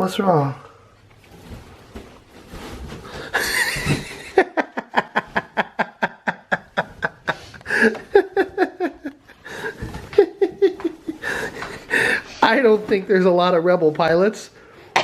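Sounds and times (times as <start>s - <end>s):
person laughing hard: 3.3s - 12.2s.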